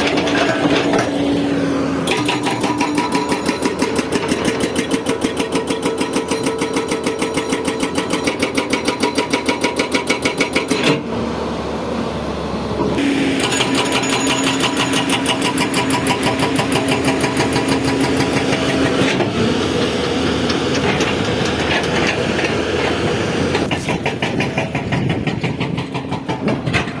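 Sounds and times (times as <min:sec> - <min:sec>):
diesel engine running: 0:00.0 - 0:05.3, 0:11.0 - 0:23.9
hydraulic breaker hammering: 0:02.0 - 0:11.0, 0:13.0 - 0:19.4, 0:20.2 - 0:27.0.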